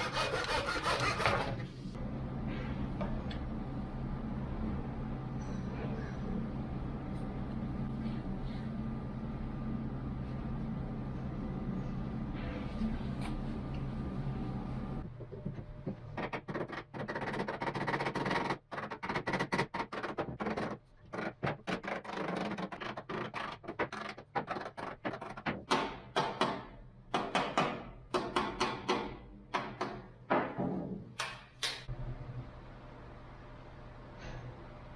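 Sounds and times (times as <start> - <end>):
hand tool scraping wood: 0.0 - 1.6.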